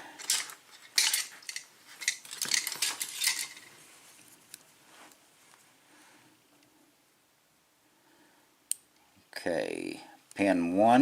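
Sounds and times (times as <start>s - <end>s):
small metal lock parts clinking: 0.0s - 3.8s.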